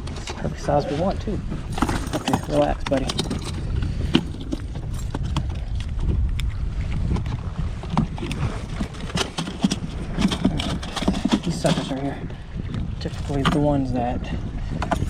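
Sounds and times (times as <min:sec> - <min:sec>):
wind rumbling on microphone: 0:00.0 - 0:15.0
fish thrashing against boat: 0:01.6 - 0:05.8, 0:07.8 - 0:12.2.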